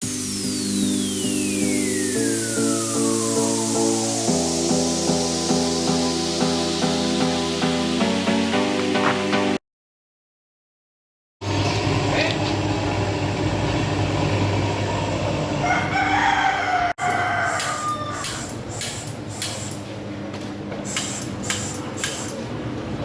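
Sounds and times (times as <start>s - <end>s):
machine humming: 0.0s - 7.2s, 17.0s - 19.9s, 20.6s - 23.0s
rooster crowing: 15.6s - 18.6s.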